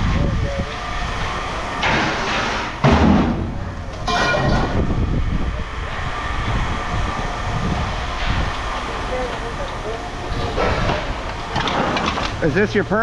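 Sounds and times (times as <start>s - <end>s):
steady low rumble: 0.0s - 13.0s
scrap metal clattering into a bin: 1.8s - 4.8s.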